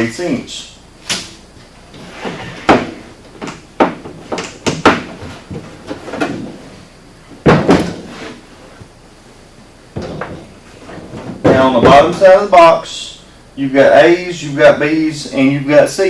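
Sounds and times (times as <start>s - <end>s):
box knocks and clunks: 7.4s - 8.1s, 10.0s - 12.2s.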